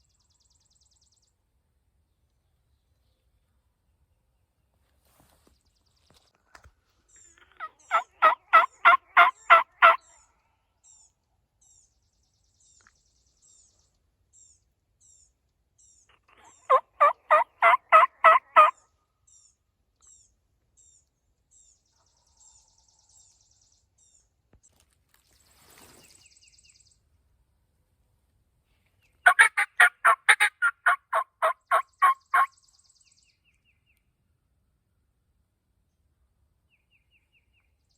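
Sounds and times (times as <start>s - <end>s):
turkey yelping: 7.6s - 10.0s, 16.3s - 18.7s, 29.2s - 32.5s
small bird chirping: 29.0s - 34.1s.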